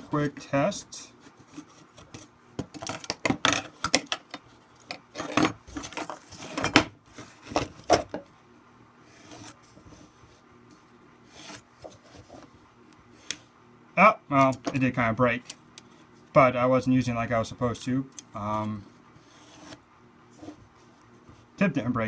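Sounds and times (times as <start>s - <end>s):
pencil scratching on wood: 11.2s - 12.5s, 19.2s - 20.6s.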